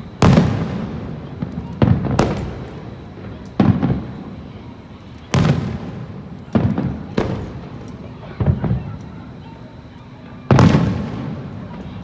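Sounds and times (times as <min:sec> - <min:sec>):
fireworks booming: 0:00.0 - 0:04.5, 0:05.3 - 0:08.9, 0:10.5 - 0:12.0.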